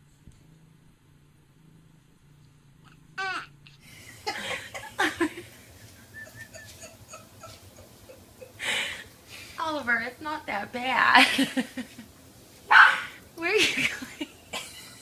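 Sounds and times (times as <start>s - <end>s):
person laughing: 4.0s - 9.1s.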